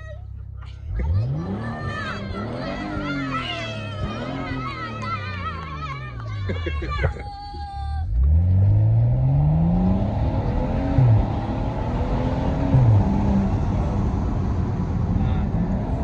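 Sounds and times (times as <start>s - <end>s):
car engine revving through gears: 0.9s - 5.6s, 8.1s - 16.0s.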